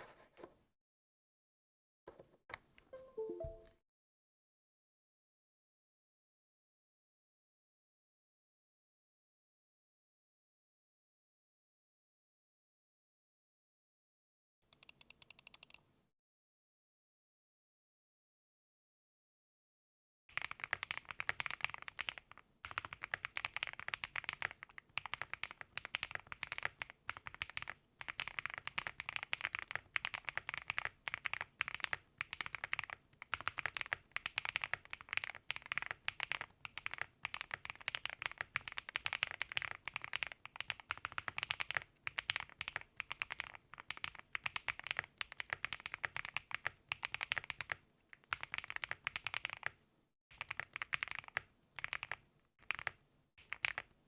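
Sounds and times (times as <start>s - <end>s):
mechanical keyboard typing: 14.7s - 15.8s, 20.3s - 49.8s, 50.4s - 54.0s.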